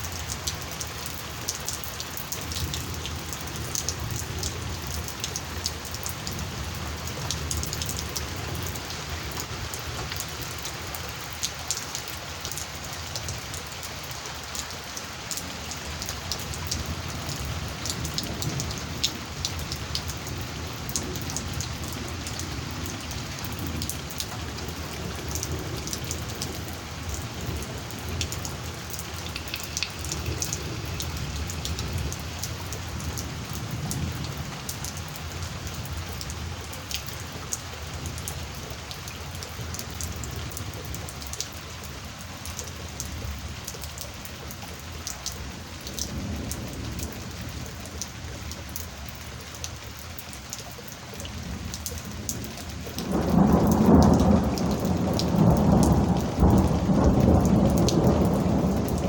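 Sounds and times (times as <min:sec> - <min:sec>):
raindrops ticking on a surface: 0:00.0 - 0:59.0
heavy rain hissing: 0:12.2 - 0:40.7, 0:52.2 - 0:59.0
low thunder rumble: 0:16.5 - 0:36.2, 0:53.0 - 0:59.0.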